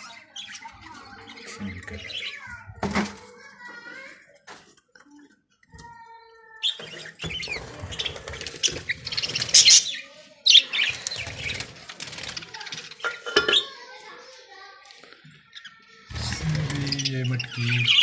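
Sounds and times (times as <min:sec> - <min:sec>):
budgerigars chirping and chattering: 0:00.0 - 0:02.5, 0:06.6 - 0:13.6, 0:15.5 - 0:18.0.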